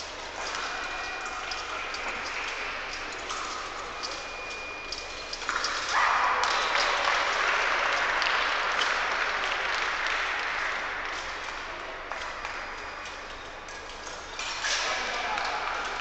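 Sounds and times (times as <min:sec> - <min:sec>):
audience applauding: 0:06.0 - 0:11.5.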